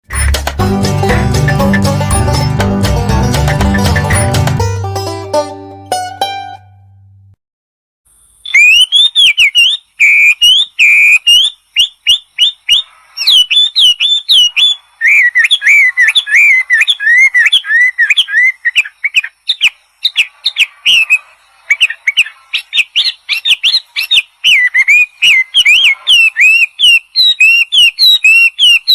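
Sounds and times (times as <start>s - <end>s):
banjo music: 0.1s - 7.4s
songbird singing whistled notes: 8.4s - 28.9s.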